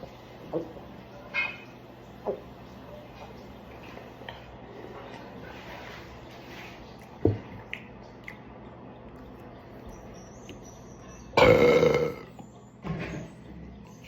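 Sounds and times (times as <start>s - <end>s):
person burping: 11.4s - 12.3s.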